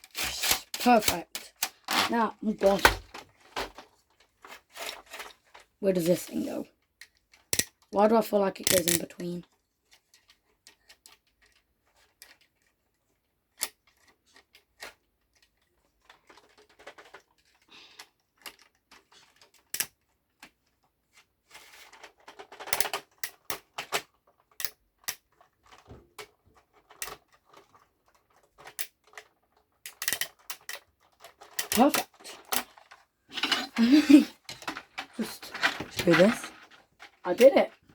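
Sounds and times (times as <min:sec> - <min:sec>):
plastic pieces clicking and knocking: 0:00.0 - 0:05.7, 0:06.8 - 0:08.0, 0:08.6 - 0:20.8, 0:21.6 - 0:37.9
parts rustling: 0:00.0 - 0:06.7, 0:25.2 - 0:37.9.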